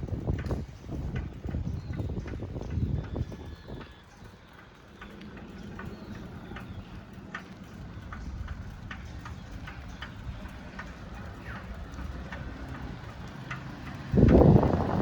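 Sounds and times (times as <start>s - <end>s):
bicycle clicking: 0.0s - 15.0s
wind and road rumble: 0.0s - 15.0s.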